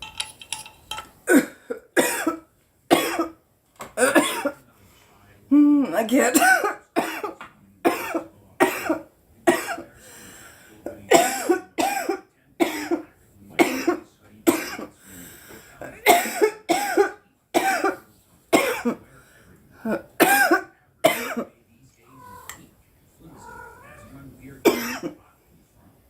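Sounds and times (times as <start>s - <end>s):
woman coughing: 5.8s - 7.3s, 16.1s - 18.0s.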